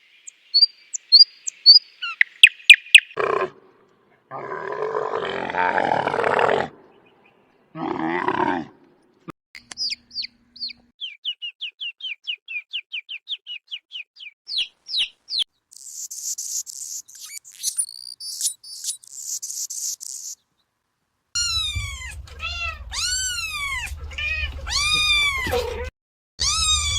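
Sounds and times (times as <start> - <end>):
quick high bird chirps: 0.0 - 3.2, 9.7 - 20.4
animal growling: 3.2 - 6.8, 7.7 - 8.8
shrill scratchy animal calls: 9.8 - 20.4, 21.4 - 25.6, 26.4 - 26.9.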